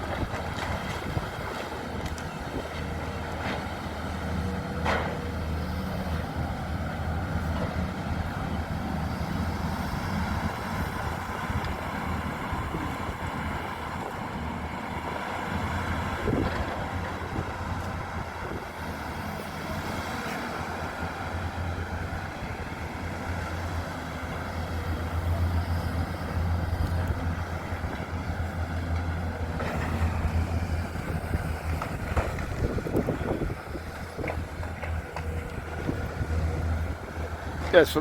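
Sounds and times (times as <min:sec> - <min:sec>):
wind buffeting microphone: 0:10.0 - 0:14.2, 0:29.4 - 0:37.6.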